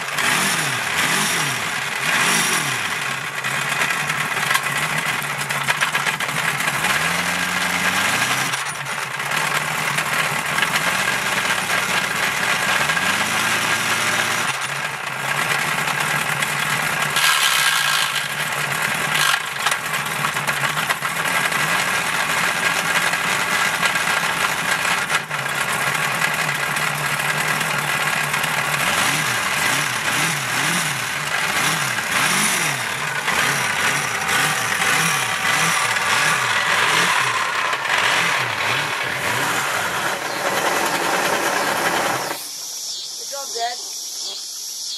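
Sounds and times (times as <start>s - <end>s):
boat engine running: 0.0s - 43.5s
steady hiss: 41.9s - 44.9s.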